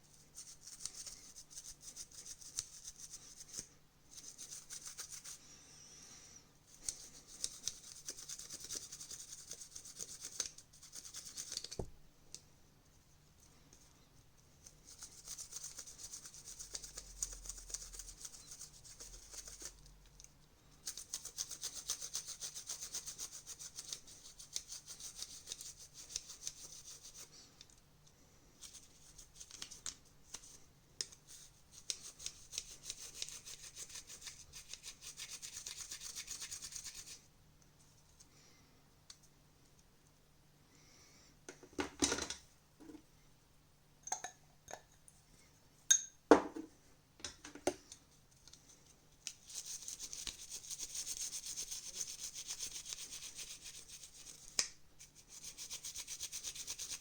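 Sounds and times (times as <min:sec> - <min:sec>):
scratchy scrubbing on plastic: 0:49.4 - 0:57.0.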